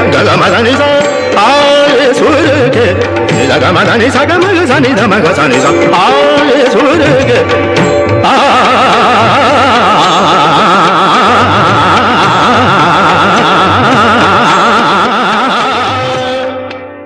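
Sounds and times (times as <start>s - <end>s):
drum beats: 0.0s - 16.9s.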